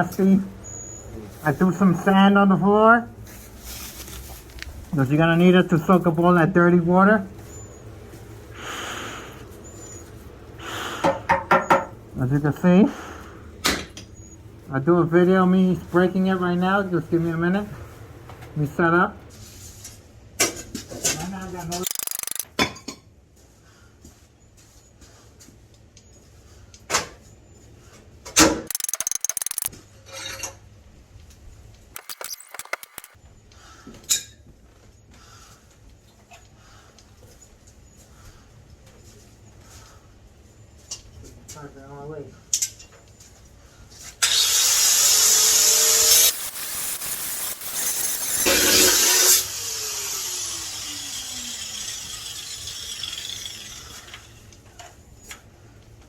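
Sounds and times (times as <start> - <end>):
angle grinder cutting metal: 21.9 - 22.4, 28.7 - 29.7, 44.2 - 54.4
grinder disc winding down: 21.9 - 22.4, 28.7 - 29.7, 44.2 - 54.4.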